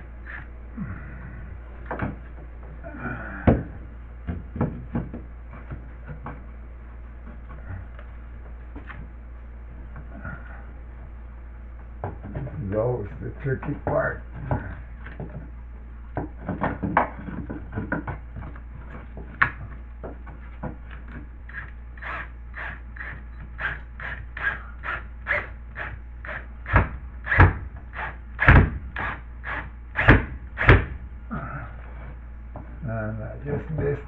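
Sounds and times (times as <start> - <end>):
heavy thumps: 1.5 - 6.4.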